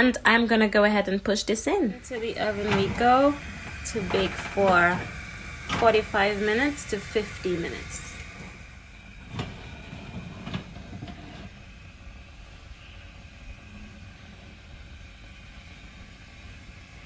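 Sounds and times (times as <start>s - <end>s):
oven low hum: 1.0s - 15.3s
cake tin scraping: 9.3s - 11.6s.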